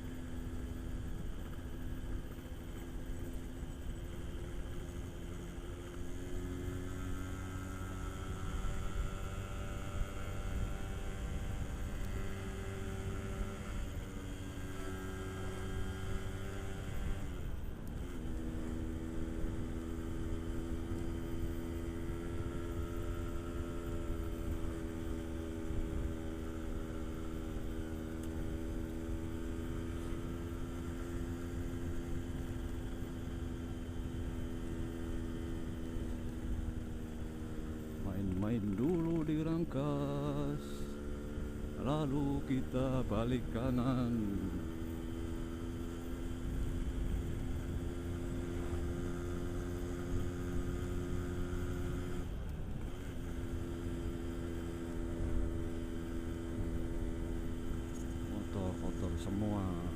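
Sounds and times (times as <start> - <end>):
two-stroke motorcycle engine running: 0.0 - 59.9.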